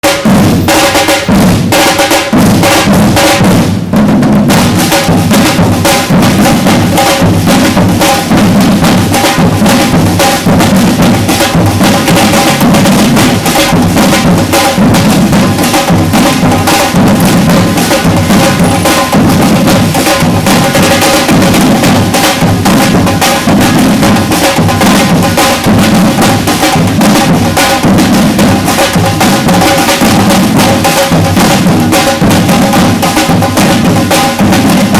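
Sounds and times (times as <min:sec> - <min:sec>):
bass drums: 0:00.0 - 0:34.9
snare drums: 0:00.0 - 0:34.9.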